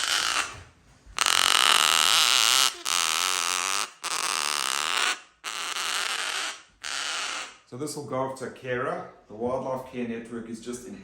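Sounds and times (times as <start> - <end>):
cockatoo harsh rasping calls: 0.0 - 7.7.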